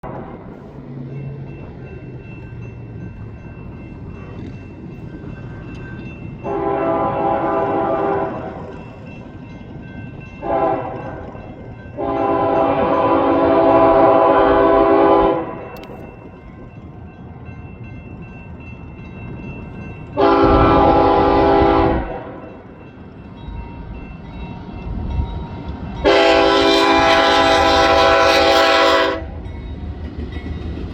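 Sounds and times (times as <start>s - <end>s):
passing train rumbling: 0.0s - 30.9s
locomotive air horn blasts: 6.5s - 8.6s, 10.4s - 11.2s, 12.0s - 15.8s, 20.2s - 22.5s, 26.0s - 29.4s.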